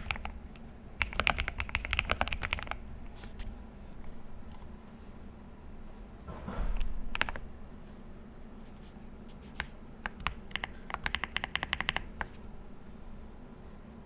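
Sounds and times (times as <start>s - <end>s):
mechanical keyboard keystrokes: 0.0s - 0.4s, 1.0s - 2.8s, 6.8s - 7.4s, 9.6s - 12.3s.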